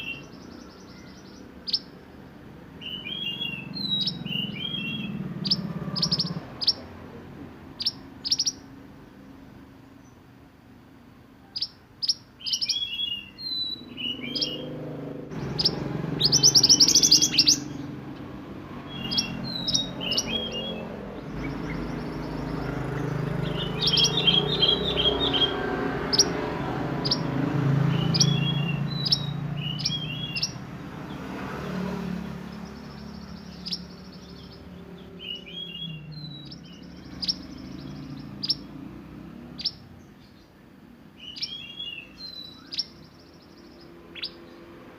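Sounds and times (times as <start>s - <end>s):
bird chirps and trills: 0.0s - 10.4s, 11.4s - 44.9s.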